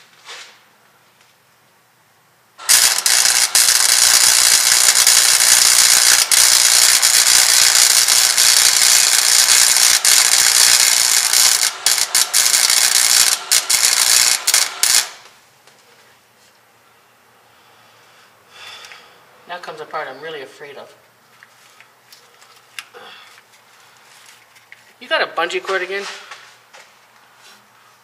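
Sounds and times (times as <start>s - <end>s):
welder arc crackling: 2.6s - 15.4s.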